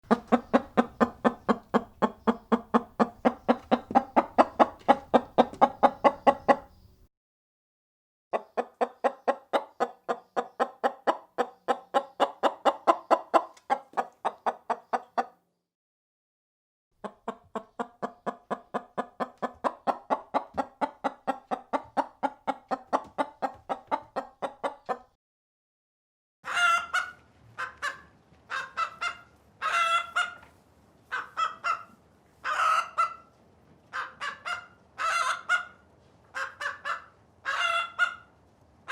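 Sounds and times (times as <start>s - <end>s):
chicken clucking: 0.0s - 7.1s, 8.3s - 15.4s, 17.0s - 25.2s, 26.4s - 38.9s
chicken high-pitched calls: 0.1s - 7.0s, 26.4s - 30.5s, 31.1s - 33.3s, 33.9s - 38.3s.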